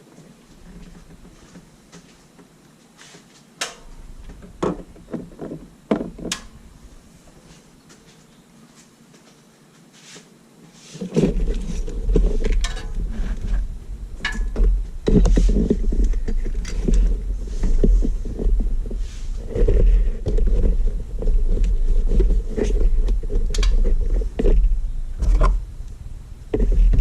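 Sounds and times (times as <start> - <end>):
loud low rumble: 3.8 - 7.2, 11.3 - 27.0.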